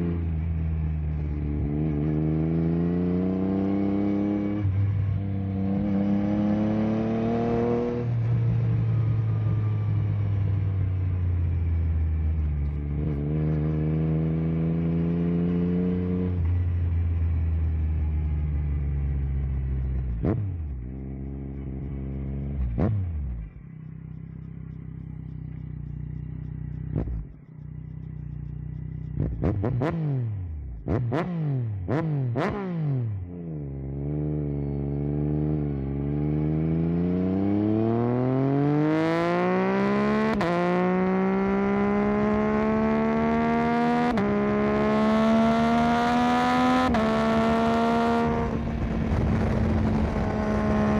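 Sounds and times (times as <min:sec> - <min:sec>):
motorcycle engine revving: 0:00.0 - 0:50.9.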